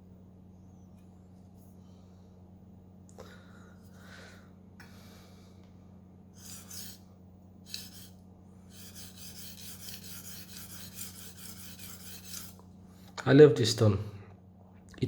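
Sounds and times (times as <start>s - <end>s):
knife scraping on whetstone: 6.4s - 7.1s, 7.7s - 12.6s.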